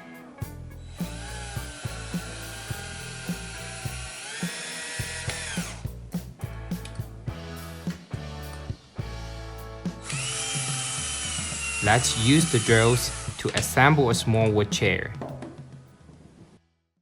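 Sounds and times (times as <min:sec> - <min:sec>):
background music with steady beat: 0:00.0 - 0:16.6
power drill boring into wood: 0:01.0 - 0:05.8, 0:10.0 - 0:13.9.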